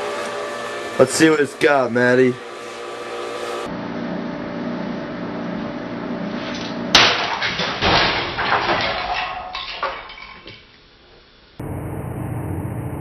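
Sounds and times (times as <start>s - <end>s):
sledgehammer crashing on metal: 6.9s - 10.4s.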